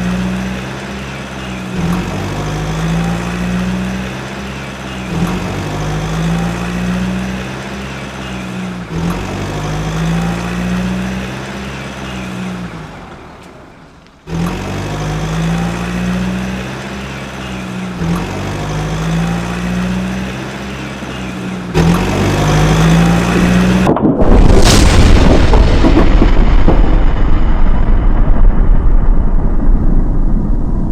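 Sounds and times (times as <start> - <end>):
low engine drone: 0.0 - 30.9
loud rumbling crash: 23.2 - 30.9.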